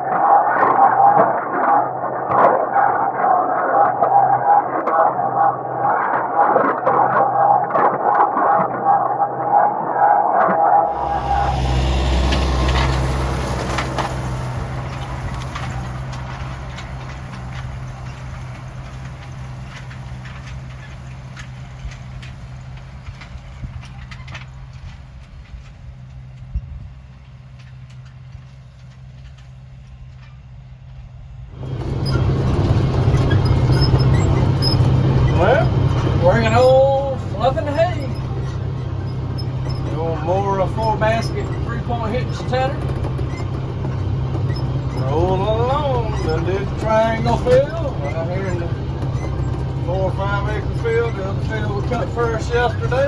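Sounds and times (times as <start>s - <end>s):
tractor engine humming: 10.9s - 53.0s
light rattles and clicks: 11.0s - 30.5s, 31.6s - 53.0s.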